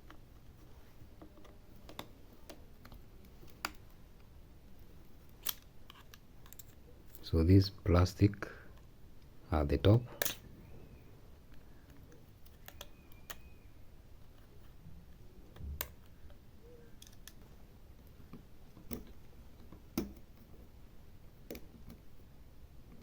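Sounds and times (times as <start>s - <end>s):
tools and plastic clicking: 5.3s - 7.2s, 10.2s - 10.5s, 11.9s - 13.6s, 15.5s - 17.4s.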